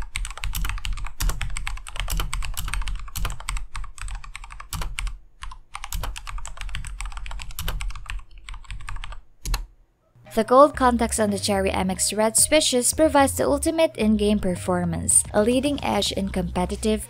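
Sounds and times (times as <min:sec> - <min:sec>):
mechanical keyboard typing: 0:00.0 - 0:09.7.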